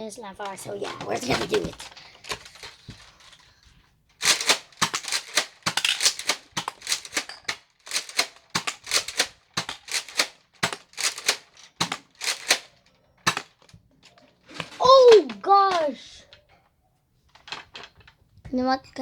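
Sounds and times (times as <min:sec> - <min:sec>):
plastic clacks of dart blaster pump: 0:04.2 - 0:13.8.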